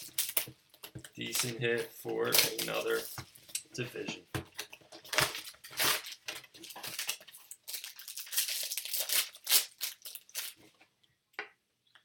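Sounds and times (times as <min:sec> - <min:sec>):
card pack wrappers crinkling: 0:00.0 - 0:03.2, 0:04.5 - 0:10.7.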